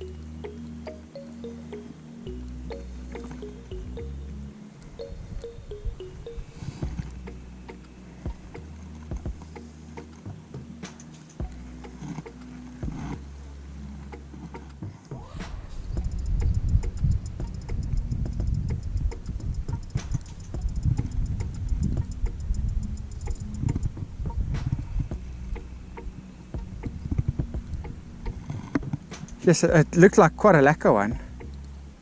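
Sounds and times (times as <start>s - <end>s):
low rumble on microphone: 12.8s - 29.1s.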